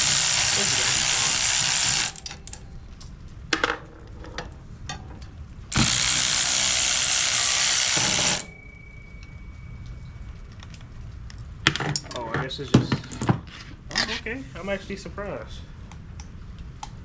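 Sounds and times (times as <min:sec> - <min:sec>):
power ratchet running: 0:00.0 - 0:02.6, 0:05.7 - 0:08.5.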